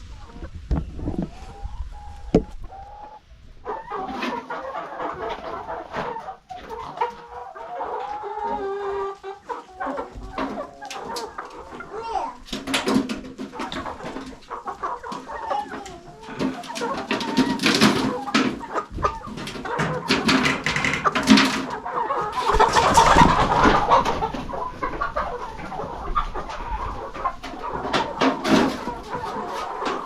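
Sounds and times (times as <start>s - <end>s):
chickens clucking: 0.0s - 30.0s.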